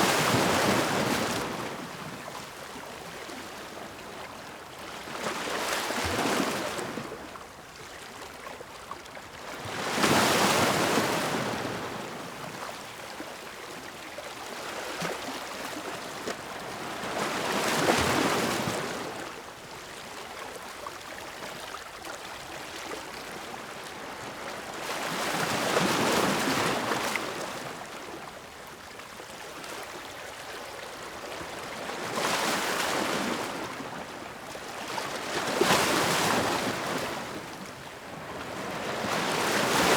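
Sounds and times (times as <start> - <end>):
surf washing: 38.2 - 39.9.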